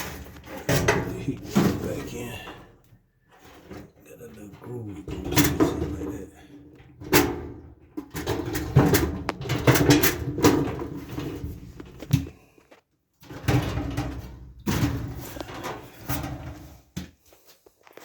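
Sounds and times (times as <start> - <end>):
sheet metal clanking and scraping: 0.0 - 2.7, 5.0 - 12.0.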